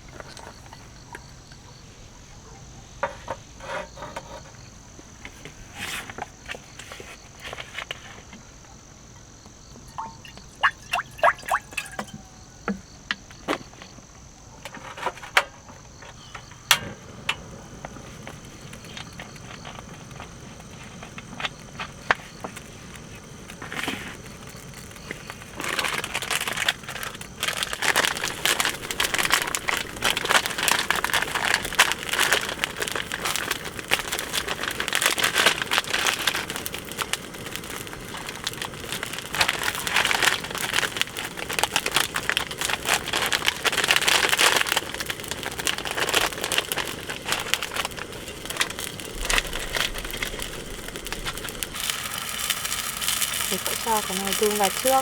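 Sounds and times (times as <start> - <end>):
plastic packaging crinkling: 9.9 - 12.2, 17.9 - 55.0.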